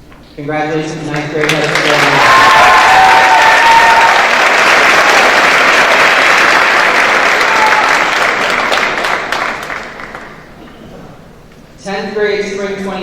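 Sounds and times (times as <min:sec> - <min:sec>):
audience applauding: 0:01.1 - 0:10.5.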